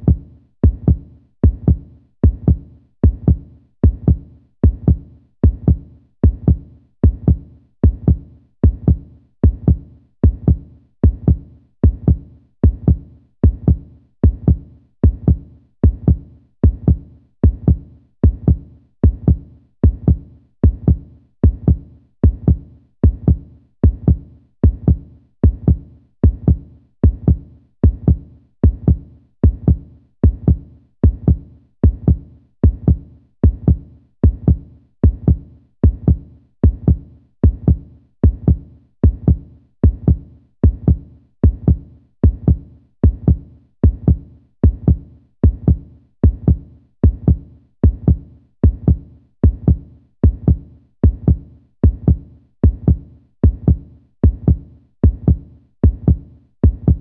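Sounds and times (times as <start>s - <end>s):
heartbeat thumps: 0.0s - 57.0s.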